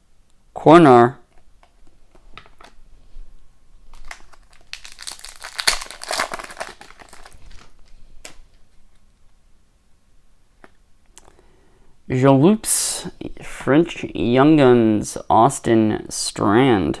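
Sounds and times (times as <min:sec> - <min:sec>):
foil wrapper crinkling and tearing: 0:03.9 - 0:08.6.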